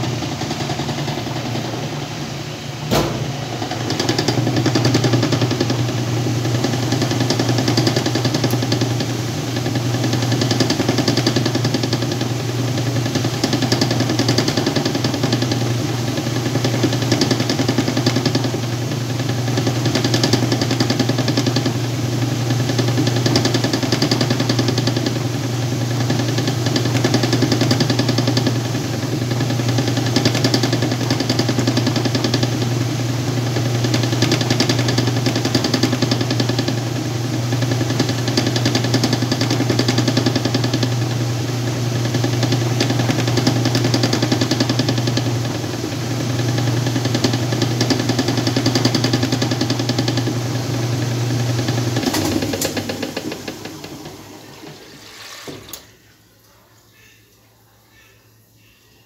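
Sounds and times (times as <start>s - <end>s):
washing machine motor hum: 0.0s - 57.6s.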